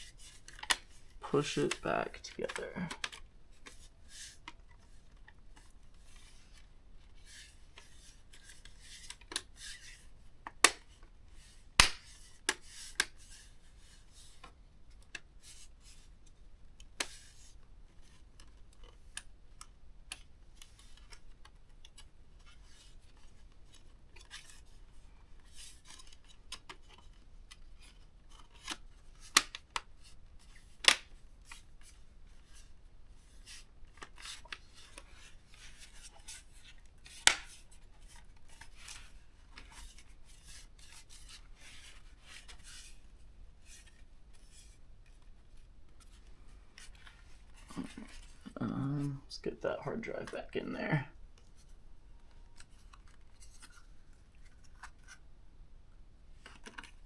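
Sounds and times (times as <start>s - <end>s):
plastic clips snapping: 11.8s - 12.1s, 30.8s - 31.1s, 37.2s - 37.6s.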